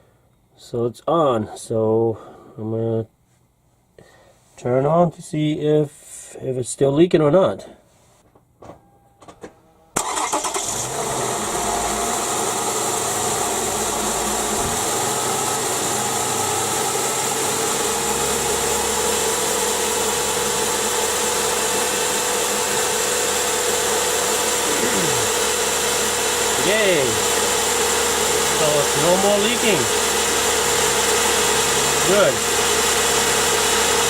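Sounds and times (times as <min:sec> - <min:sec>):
car engine starting and idling: 0:10.0 - 0:34.0.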